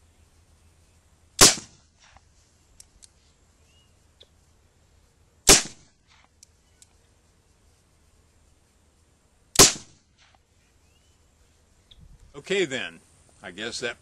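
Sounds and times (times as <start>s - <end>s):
light clicks: 2.8s - 3.2s.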